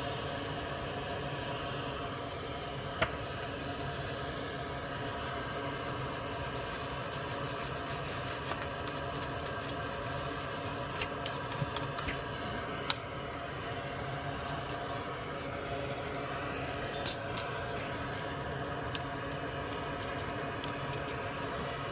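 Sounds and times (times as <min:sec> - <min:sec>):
steady hum and hiss: 0:00.0 - 0:21.9.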